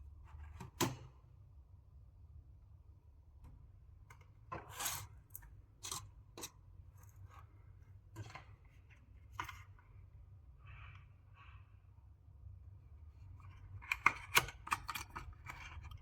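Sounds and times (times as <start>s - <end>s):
scraping and snipping handwork: 0.2s - 1.1s, 4.1s - 9.8s, 13.3s - 16.0s.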